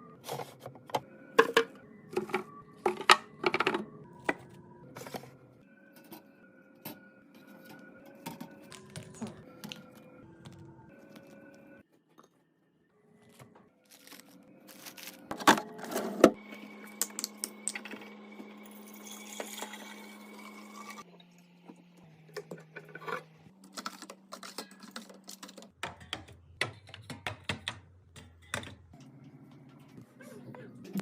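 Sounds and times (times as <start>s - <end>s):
clicks and taps from containers: 23.8s - 28.8s.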